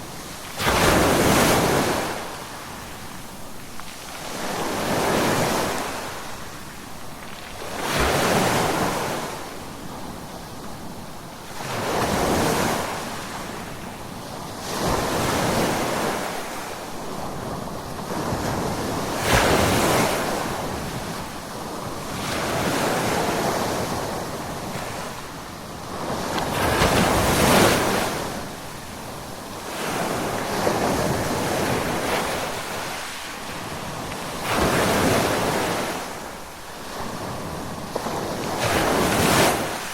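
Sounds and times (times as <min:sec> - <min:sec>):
ocean waves crashing: 0:00.0 - 0:03.4, 0:14.6 - 0:39.9.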